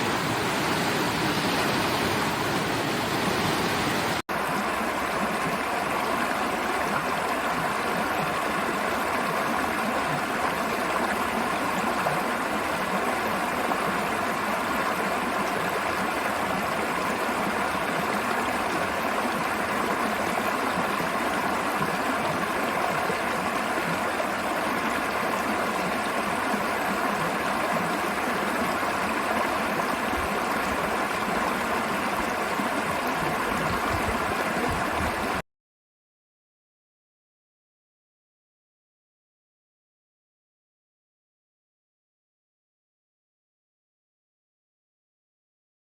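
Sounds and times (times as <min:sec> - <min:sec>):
river water rushing: 0:00.0 - 0:35.4.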